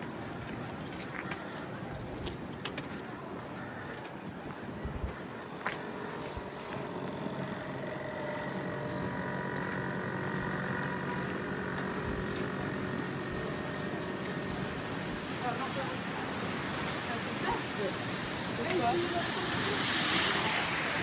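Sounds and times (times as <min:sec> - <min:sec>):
street noise: 0:00.0 - 0:21.0
vehicle engine humming: 0:04.7 - 0:21.0.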